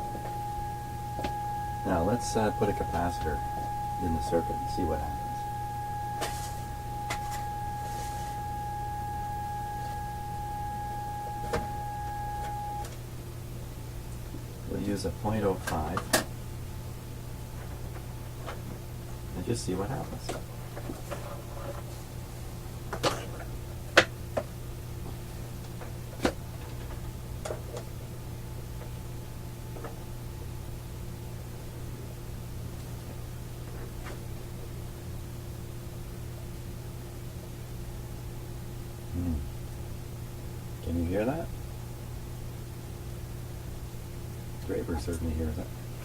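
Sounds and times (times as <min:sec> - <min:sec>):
steady test tone: 0:00.0 - 0:12.9
low hum: 0:00.0 - 0:13.0
steady low hum: 0:00.0 - 0:46.0.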